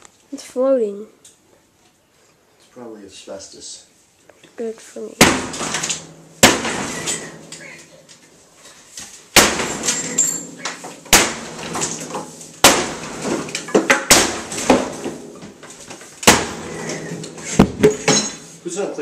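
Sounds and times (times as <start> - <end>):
sledgehammer smashing glass: 5.2 - 7.7, 9.3 - 15.4, 16.2 - 18.5
crackling glass and falling shards: 5.2 - 18.6.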